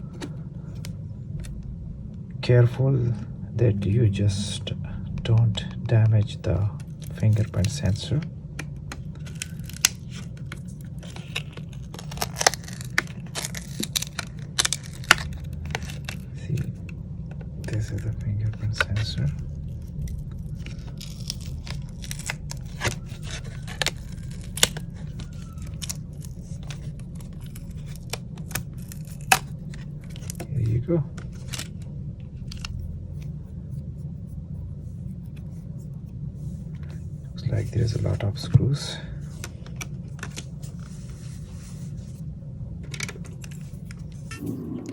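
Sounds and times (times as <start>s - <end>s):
steady low hum: 0.0s - 44.9s
plastic cover peeling with clicks: 5.2s - 33.3s, 39.3s - 40.9s.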